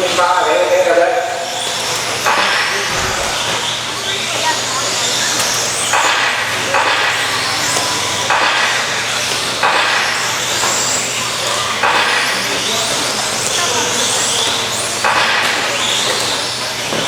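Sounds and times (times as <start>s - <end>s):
tyre and chassis noise: 2.3s - 4.0s
electric motor whines: 2.7s - 4.1s.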